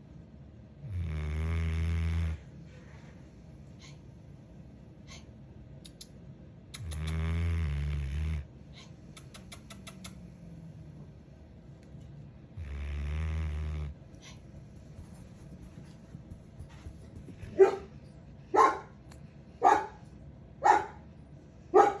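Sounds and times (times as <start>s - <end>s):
puppy snoring: 0.8s - 2.5s, 6.8s - 11.0s, 12.5s - 14.4s.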